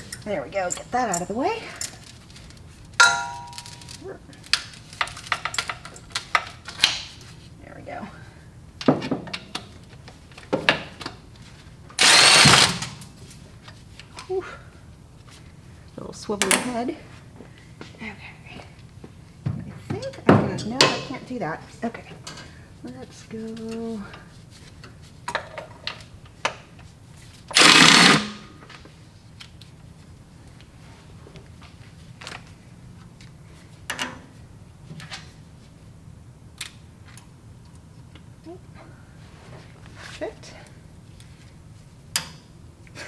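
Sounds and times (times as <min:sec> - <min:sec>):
sharp metal clanks: 0:03.0 - 0:04.0
power ratchet burst: 0:12.0 - 0:13.0, 0:27.5 - 0:28.5
metal parts clinking and knocking: 0:12.0 - 0:13.4.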